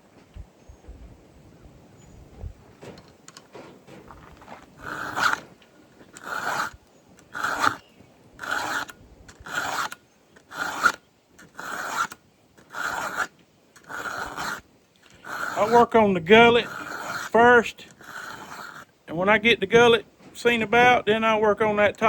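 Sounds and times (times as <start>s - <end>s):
file rasping on chainsaw chain: 4.8s - 7.8s, 8.4s - 18.9s.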